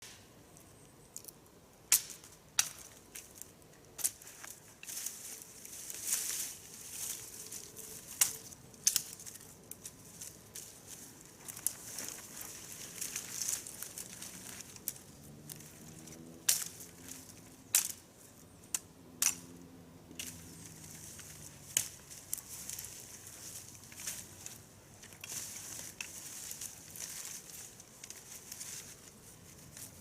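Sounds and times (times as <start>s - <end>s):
dry leaves and twigs crunching: 0.5s - 30.0s
sharp twig snaps: 1.9s - 4.2s, 8.1s - 9.9s, 13.0s - 18.0s, 18.6s - 19.6s, 20.2s - 22.8s.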